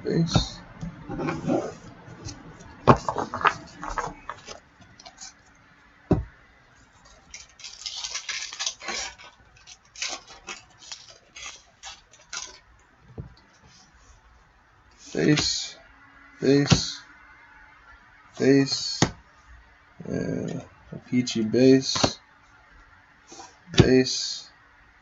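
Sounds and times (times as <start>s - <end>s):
foil wrapper crinkling: 7.0s - 12.7s.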